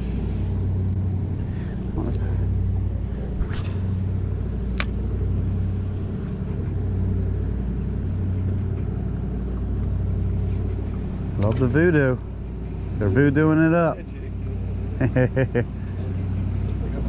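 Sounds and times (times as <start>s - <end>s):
boat motor humming: 0.0s - 17.0s.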